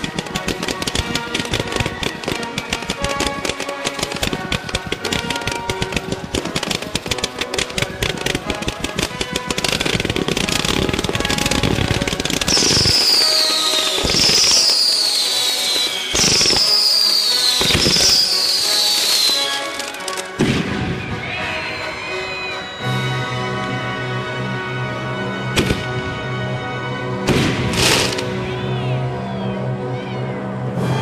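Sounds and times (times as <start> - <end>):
fireworks crackling: 0.0 - 23.2, 27.3 - 28.5
music playing: 0.0 - 31.0
falling firework whistles: 9.6 - 23.4.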